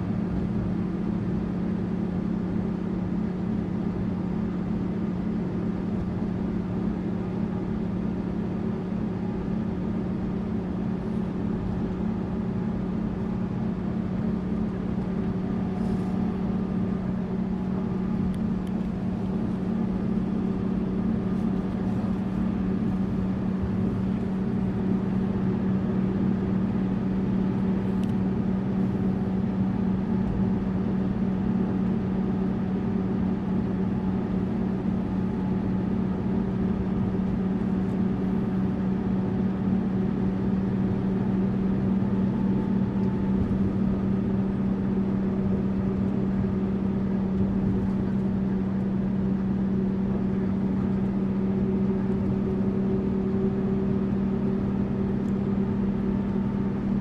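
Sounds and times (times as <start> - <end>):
bus engine drone: 0.0 - 57.0
road noise: 4.6 - 57.0.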